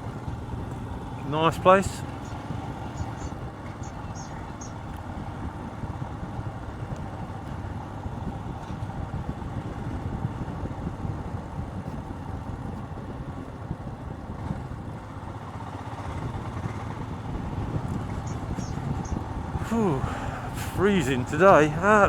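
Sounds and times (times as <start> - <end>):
motorcycle engine droning: 0.2 - 8.4, 16.0 - 22.0.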